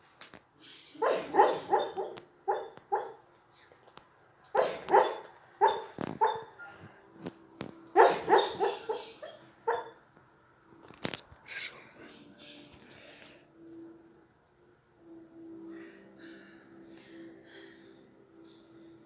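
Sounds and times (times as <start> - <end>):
dog barking and yipping: 1.0 - 3.2, 4.6 - 6.6, 8.0 - 10.0.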